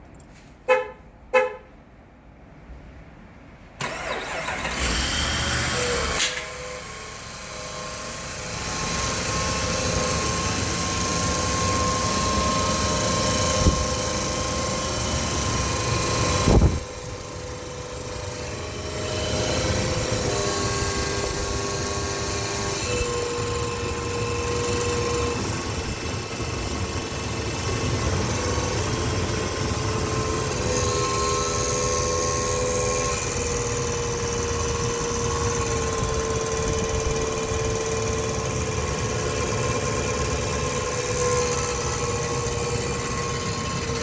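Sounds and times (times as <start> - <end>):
car horn chirps: 0.6 - 1.8
engine cranking and running: 3.8 - 44.0
high transmission whine: 3.8 - 44.0.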